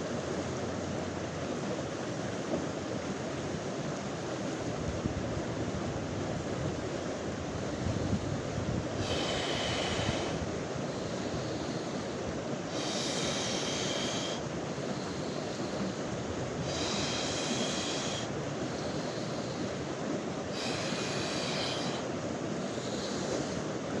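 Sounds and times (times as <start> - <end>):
rushing surf or wind: 0.0 - 24.0
person breathing with hissing breath: 7.6 - 24.0.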